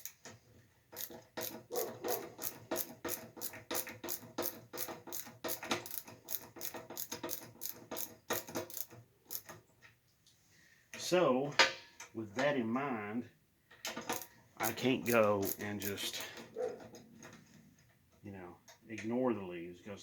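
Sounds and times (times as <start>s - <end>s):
ratchet wrench clicking: 0.0s - 0.2s, 1.0s - 9.6s, 14.0s - 16.3s.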